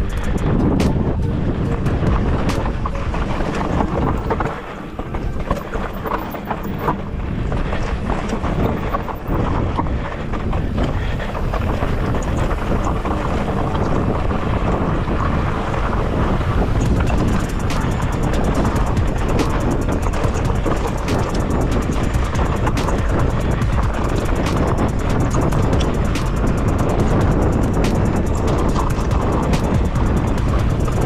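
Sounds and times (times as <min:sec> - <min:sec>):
rumbling tyre noise: 0:00.0 - 0:31.0
wind buffeting microphone: 0:00.0 - 0:31.0
short clicks and rattles: 0:16.8 - 0:31.0.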